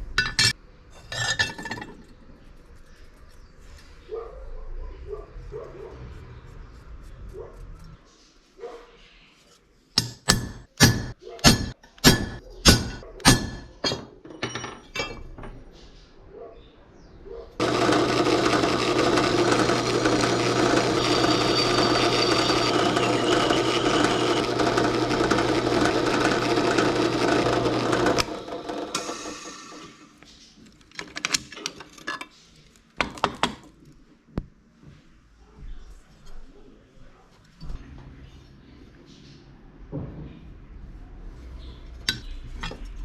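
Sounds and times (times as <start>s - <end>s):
hammer striking steel: 10.0s - 15.3s
motorised shop tool running: 17.6s - 30.2s.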